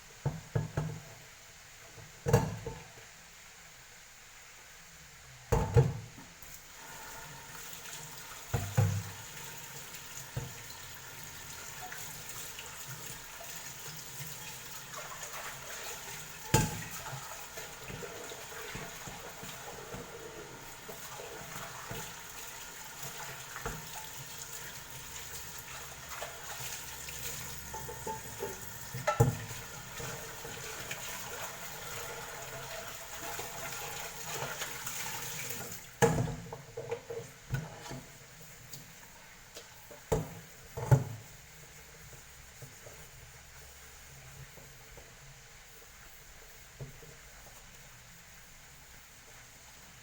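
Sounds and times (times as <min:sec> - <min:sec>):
tap water running into sink: 0:05.5 - 0:41.3.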